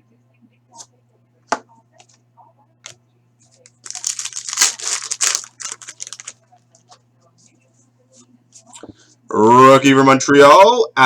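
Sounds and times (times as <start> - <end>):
foil wrapper tearing: 3.6 - 6.4.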